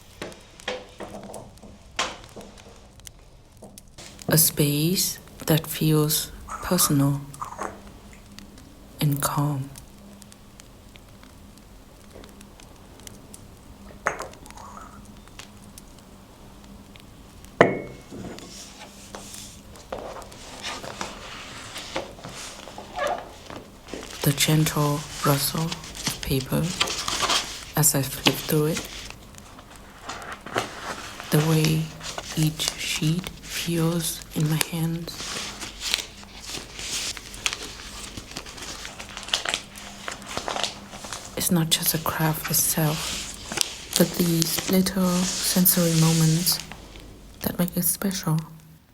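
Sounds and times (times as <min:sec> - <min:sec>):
faint fire crackling: 0:00.0 - 0:48.9
paper rustling: 0:16.7 - 0:48.2.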